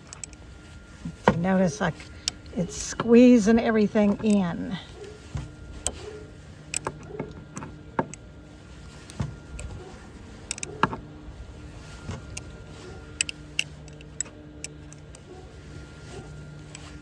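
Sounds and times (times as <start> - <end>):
metal parts ticking and clicking: 0.0 - 0.5, 10.4 - 11.0.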